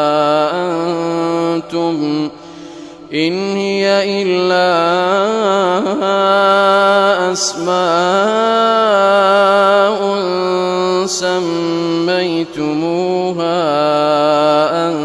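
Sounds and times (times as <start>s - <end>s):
man chanting recitation: 0.0s - 2.4s, 3.0s - 15.0s.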